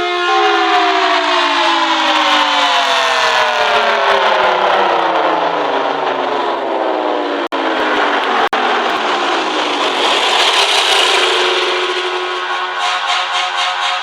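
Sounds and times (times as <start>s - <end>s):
warning siren winding down: 0.0s - 14.0s
hiss: 9.2s - 14.0s.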